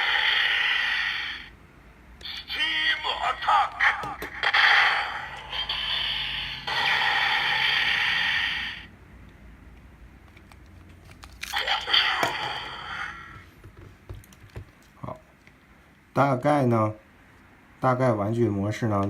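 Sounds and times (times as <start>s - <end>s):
toy speaker hissing burst: 0.0s - 1.5s, 4.4s - 8.9s.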